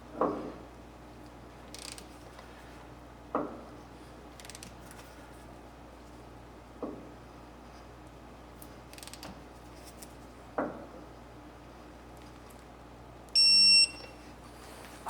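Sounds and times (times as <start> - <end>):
torque wrench high beep: 13.4 - 14.1.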